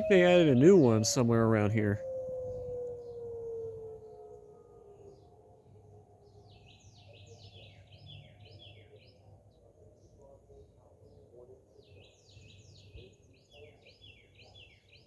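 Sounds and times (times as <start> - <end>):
faint low hum: 0.0 - 11.7
songbird chirping: 0.0 - 15.0.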